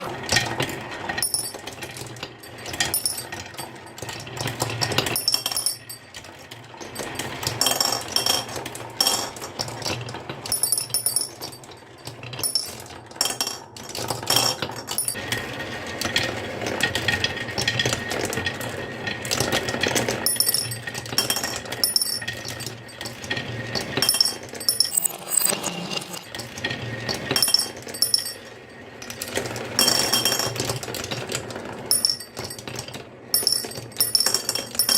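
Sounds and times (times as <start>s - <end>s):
marbles rattling down a track: 0.1s - 34.9s
marbles clinking: 24.0s - 26.4s.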